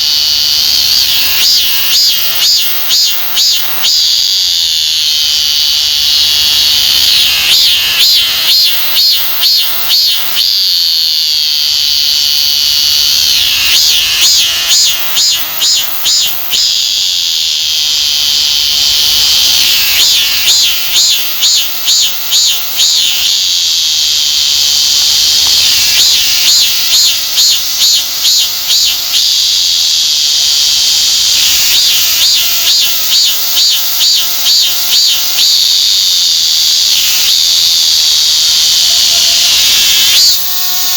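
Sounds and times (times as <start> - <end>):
cicada singing loudly: 0.0 - 40.9.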